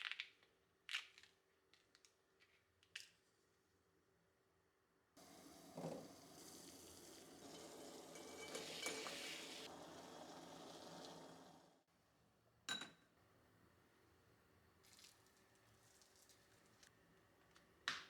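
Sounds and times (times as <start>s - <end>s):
food sizzling in a frying pan: 5.2s - 11.8s
utensil clinking against pan: 5.9s - 9.7s.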